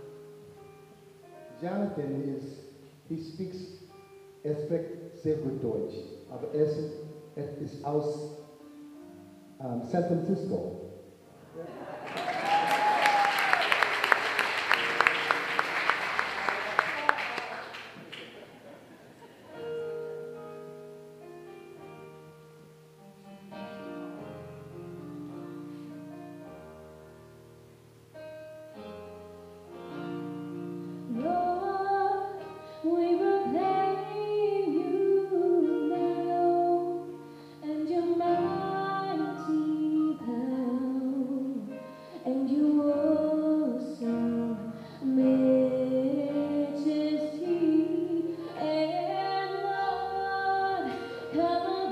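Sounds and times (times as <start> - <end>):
applause: 12.0 - 18.6
keyboard playing held chords: 19.5 - 51.9
gospel choir women singing: 45.6 - 51.2.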